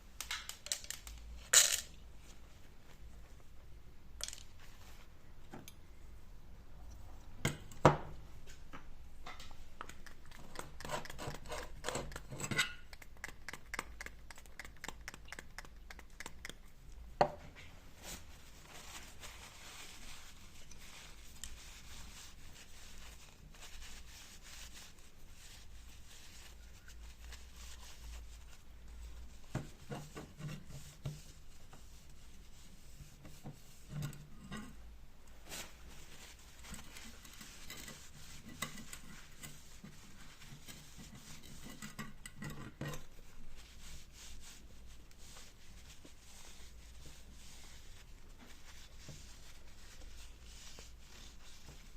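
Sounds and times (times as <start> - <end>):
small metal parts clinking: 0.6 - 2.0.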